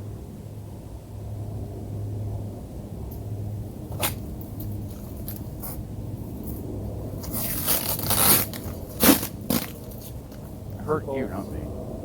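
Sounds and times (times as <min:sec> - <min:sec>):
packing material rustling scrape: 0:07.2 - 0:10.2.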